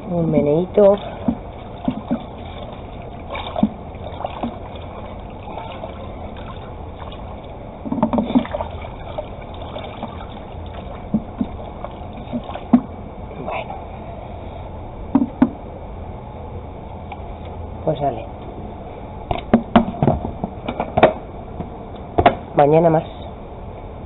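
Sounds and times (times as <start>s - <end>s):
liquid sloshing: 0.4s - 13.0s.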